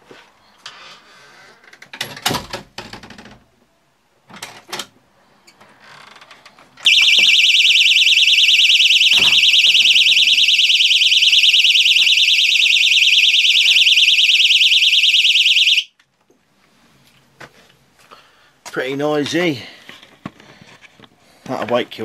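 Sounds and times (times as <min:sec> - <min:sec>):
warbling alarm tone: 0:06.9 - 0:15.9.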